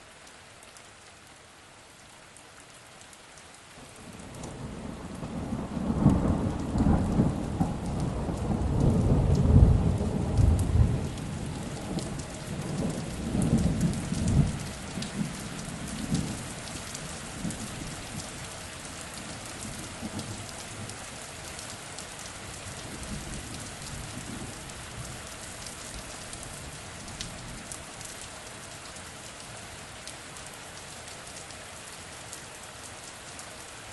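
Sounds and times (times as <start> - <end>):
steady rain falling: 0.0 - 33.9
rolling thunder rumble: 4.5 - 18.3.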